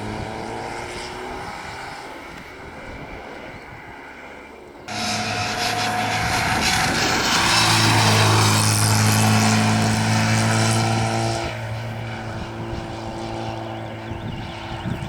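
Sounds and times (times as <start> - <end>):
rally car engine at high revs: 0.0 - 2.2, 4.9 - 14.8.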